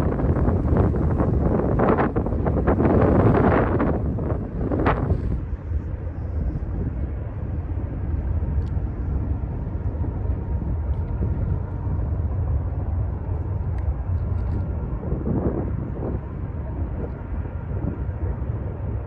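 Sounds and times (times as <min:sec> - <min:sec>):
distant freight train rumble: 0:00.0 - 0:19.0
wind noise on microphone: 0:00.0 - 0:19.0.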